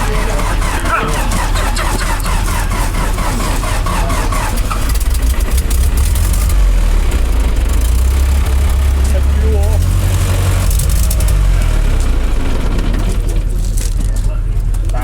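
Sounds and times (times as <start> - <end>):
tractor engine running: 0.0 - 15.0.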